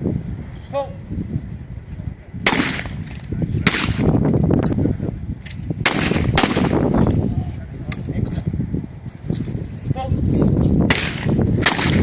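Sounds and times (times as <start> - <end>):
shotgun shots: 2.4 - 4.2, 5.8 - 6.8, 10.9 - 12.0.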